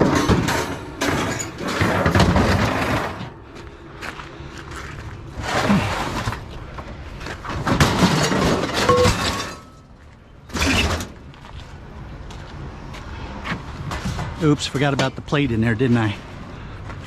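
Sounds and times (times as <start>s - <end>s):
scrap crashing and shattering: 0.0s - 3.4s, 5.4s - 6.5s, 7.3s - 9.9s.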